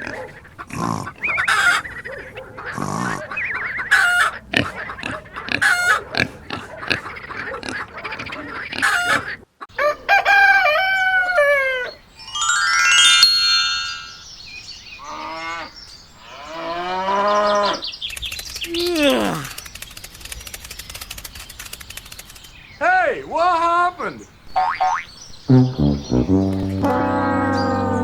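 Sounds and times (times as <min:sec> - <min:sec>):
farm animal calls: 0:00.0 - 0:10.3
rooster crowing: 0:09.8 - 0:12.0.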